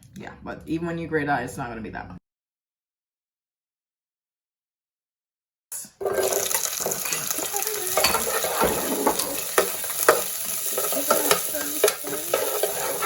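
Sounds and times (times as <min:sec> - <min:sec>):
sizzling in a frying pan: 0:05.9 - 0:13.0
utensil stirring: 0:06.0 - 0:13.0
utensil clicking against pan: 0:06.1 - 0:13.0.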